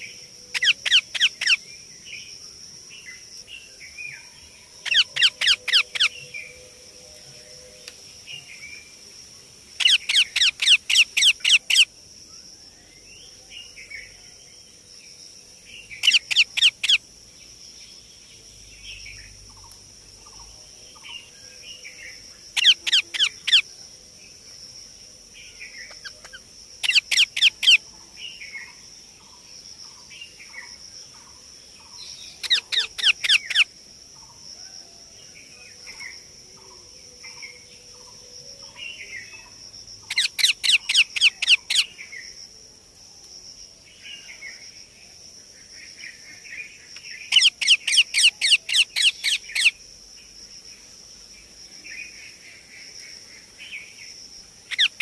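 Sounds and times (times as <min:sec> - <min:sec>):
parakeet shrill chirps: 0:00.5 - 0:01.6, 0:04.8 - 0:06.1, 0:09.8 - 0:11.9, 0:16.0 - 0:17.0, 0:22.6 - 0:23.6, 0:26.8 - 0:27.8, 0:32.4 - 0:33.7, 0:47.3 - 0:49.7, 0:54.7 - 0:55.0.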